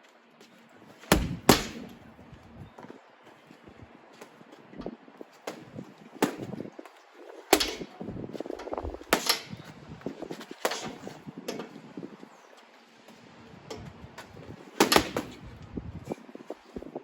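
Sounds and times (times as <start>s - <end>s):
boxing gloves hitting punch bag: 1.0s - 2.0s, 5.4s - 6.7s, 7.5s - 8.0s, 9.1s - 9.7s, 10.4s - 11.2s, 14.8s - 15.5s.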